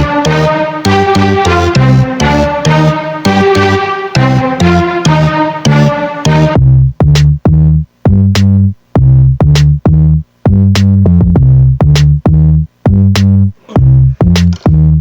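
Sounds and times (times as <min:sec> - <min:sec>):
electronic music with drum machine: 0:00.0 - 0:07.6.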